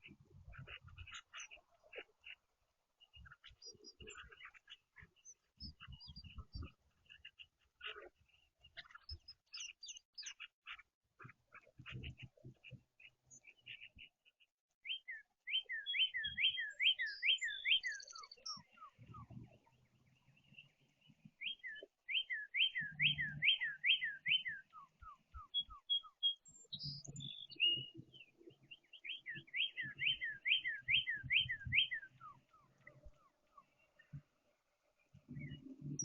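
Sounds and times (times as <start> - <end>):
songbird whistling: 14.8 - 19.3, 21.4 - 28.0, 28.9 - 32.7.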